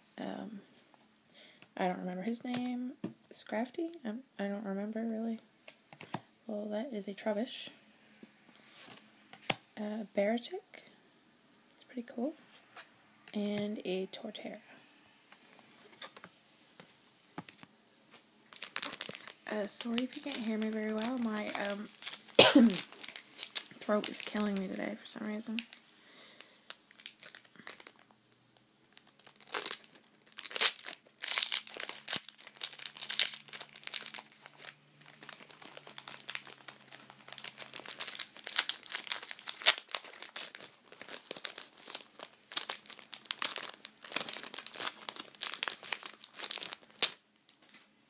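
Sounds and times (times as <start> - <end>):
foil wrapper crinkling and tearing: 18.5 - 28.1, 28.8 - 47.7.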